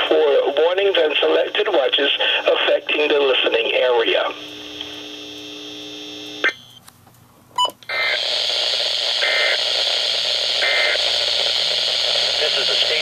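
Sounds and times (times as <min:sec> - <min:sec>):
static hiss: 0:07.9 - 0:13.0
data tone bursts: 0:10.6 - 0:13.0.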